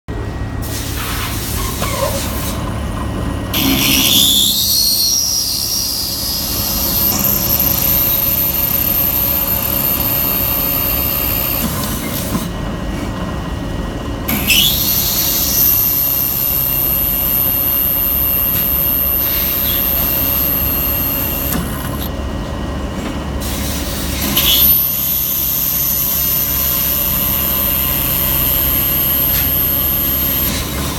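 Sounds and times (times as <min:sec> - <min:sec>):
machine hum: 0:03.4 - 0:12.3, 0:14.0 - 0:22.7, 0:24.2 - 0:30.9
diamond drill whining through stone: 0:03.6 - 0:12.2, 0:14.3 - 0:22.1, 0:24.2 - 0:30.9.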